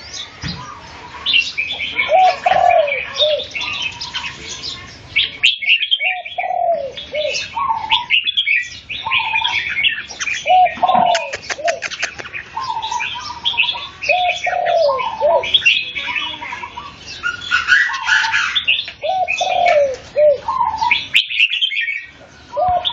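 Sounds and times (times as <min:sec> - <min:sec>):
birds chirping and whistling: 0:00.0 - 0:22.9
lower curved bird phrases: 0:00.0 - 0:22.9.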